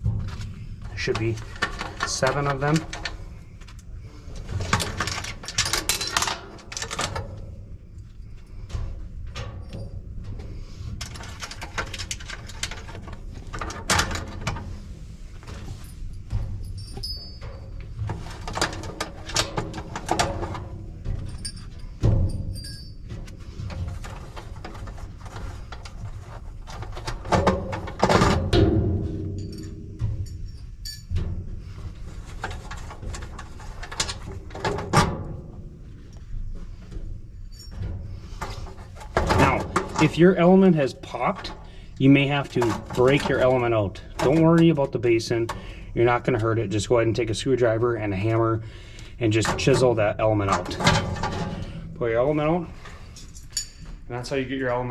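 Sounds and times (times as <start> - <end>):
low steady hum: 0.0 - 54.9
metal knocks and clinks: 4.5 - 7.6, 15.5 - 35.5, 37.4 - 41.8, 52.9 - 54.1.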